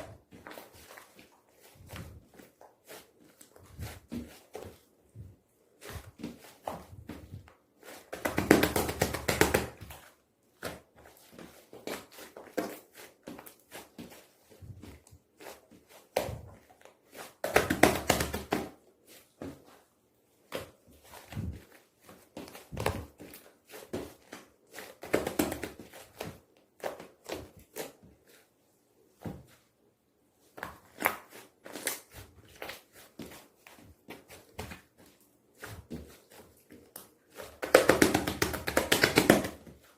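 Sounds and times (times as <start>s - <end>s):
hands squishing slime: 0.0s - 29.3s.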